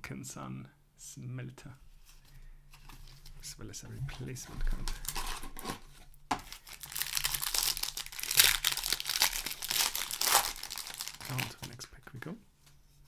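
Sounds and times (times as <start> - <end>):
foil wrapper crinkling: 4.8 - 11.9.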